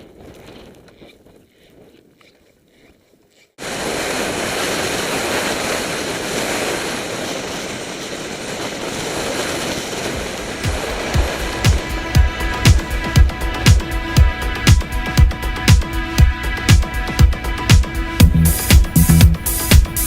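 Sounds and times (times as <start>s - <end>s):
skis rushing through snow: 0.0s - 15.6s
wind: 0.0s - 20.0s.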